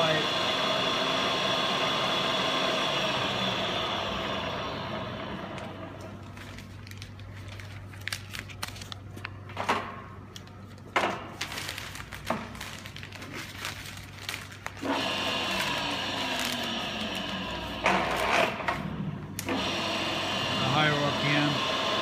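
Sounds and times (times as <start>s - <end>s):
drilling machine humming: 0.0s - 6.2s, 14.8s - 22.0s.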